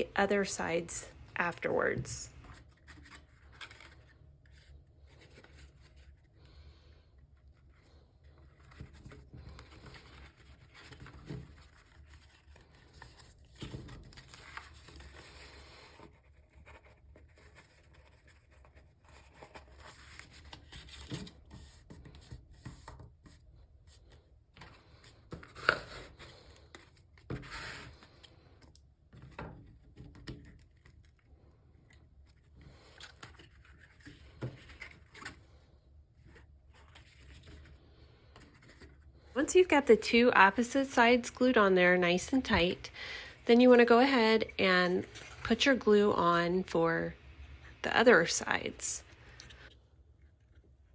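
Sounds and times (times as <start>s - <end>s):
paper rustling and scraping: 0.0s - 28.5s, 29.1s - 39.4s.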